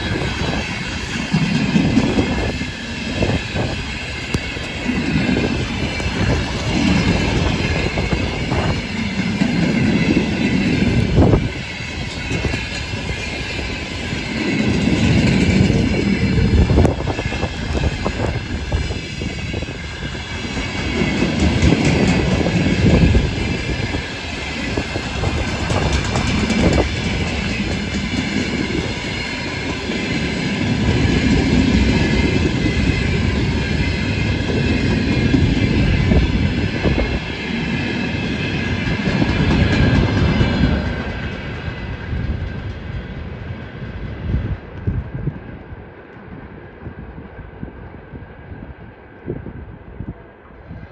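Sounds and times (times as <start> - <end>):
train wheels clattering over rail joints: 0.1 - 43.1.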